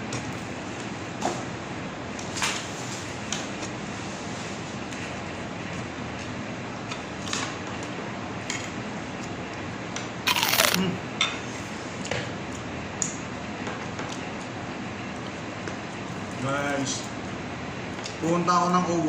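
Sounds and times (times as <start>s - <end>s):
quiet eating sounds: 10.3s - 10.8s
room noise: 10.3s - 10.8s
sharp noisy sound: 10.3s - 10.8s.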